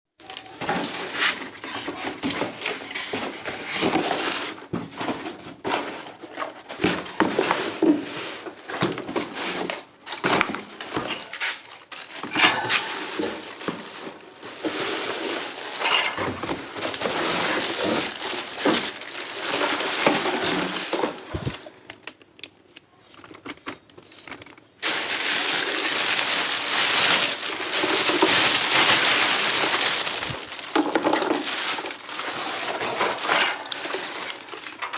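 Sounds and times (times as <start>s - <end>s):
packaging rustling and crinkling: 0.2s - 34.9s.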